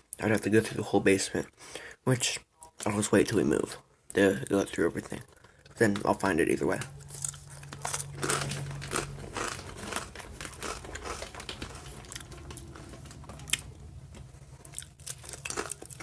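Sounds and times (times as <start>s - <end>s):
rustling and crinkling handling: 4.6s - 16.0s.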